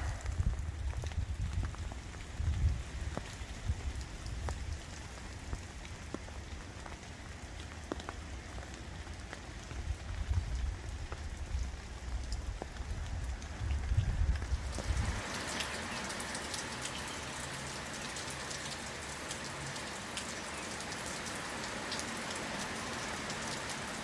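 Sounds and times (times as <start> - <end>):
low rumble on the microphone: 0.0 - 4.8, 9.8 - 15.2
raindrops ticking close by: 0.0 - 24.0
steady rain falling: 0.0 - 24.0.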